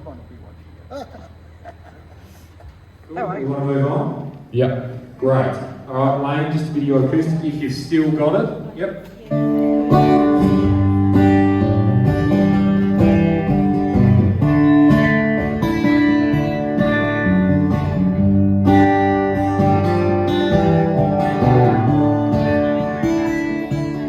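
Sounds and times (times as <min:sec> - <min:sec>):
acoustic guitar chords: 0:05.9 - 0:24.0.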